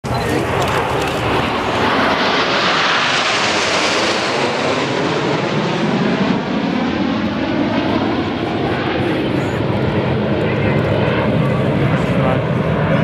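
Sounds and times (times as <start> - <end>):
jet engines roaring overhead: 0.0 - 13.0.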